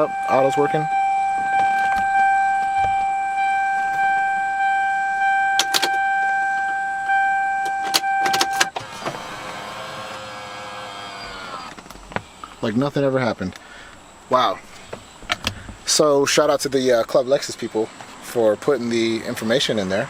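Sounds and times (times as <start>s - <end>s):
electronic warning tone: 0.0s - 8.8s
steering column motor whirring: 0.9s - 11.8s
sharp clicks: 5.6s - 6.0s.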